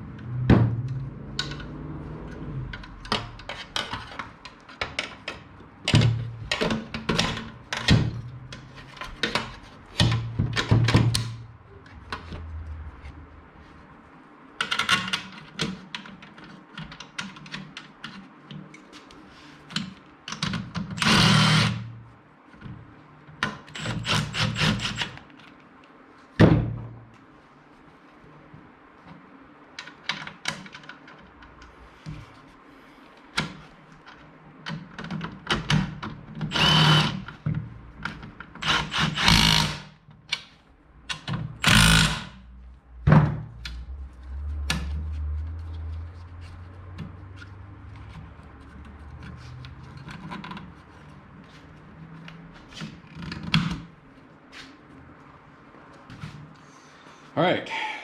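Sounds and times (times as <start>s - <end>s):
low steady hum: 0.0s - 14.6s.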